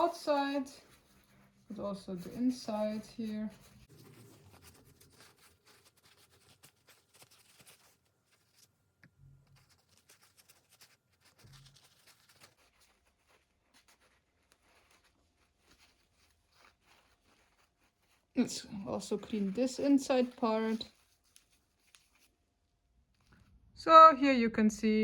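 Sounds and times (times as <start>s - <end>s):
paper towel rubbing and scratching: 0.0s - 8.8s, 9.4s - 23.5s
small clicks and rustles: 0.0s - 23.6s.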